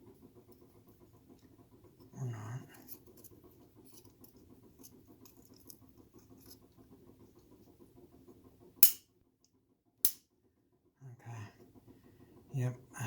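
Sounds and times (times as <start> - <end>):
small parts clicking and scratching: 2.6 - 7.7.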